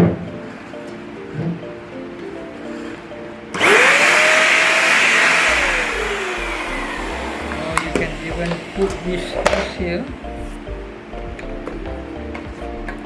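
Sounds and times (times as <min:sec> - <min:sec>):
background music: 0:00.0 - 0:13.0
vacuum cleaner motor whine: 0:03.5 - 0:10.2.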